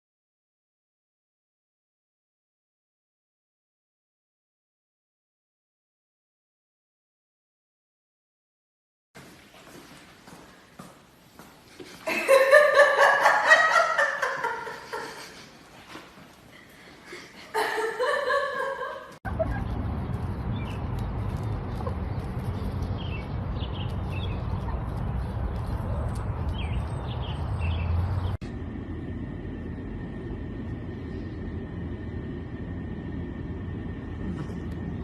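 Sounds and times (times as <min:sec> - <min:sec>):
steady low rumble: 0:19.2 - 0:35.0.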